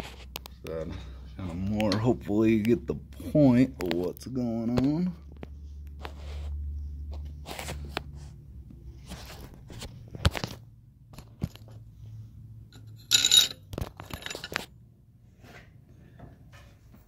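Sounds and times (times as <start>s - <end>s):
metallic jangle and scrape: 12.7s - 14.7s
tools clicking and knocking: 12.8s - 14.7s.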